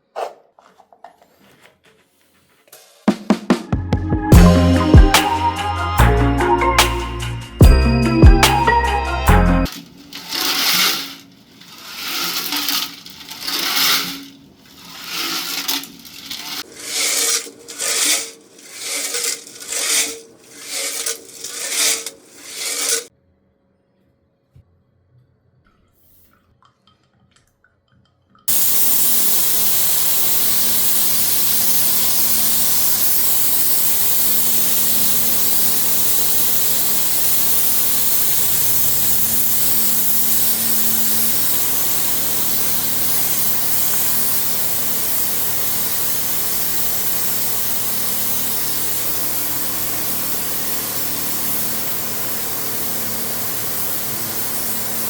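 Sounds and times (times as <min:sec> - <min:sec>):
air spray gun hissing: 0:04.3 - 0:09.4, 0:12.0 - 0:14.2, 0:14.8 - 0:18.2, 0:28.5 - 0:55.0.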